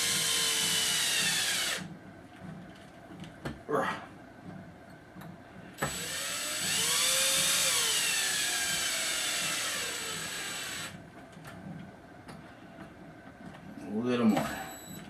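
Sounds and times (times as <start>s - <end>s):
drill motor whine: 0.0s - 1.9s, 5.8s - 11.0s.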